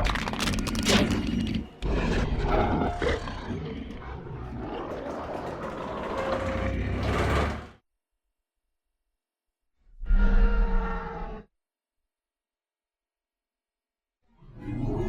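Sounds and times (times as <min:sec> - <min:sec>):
deep growling roar: 0:00.1 - 0:07.8.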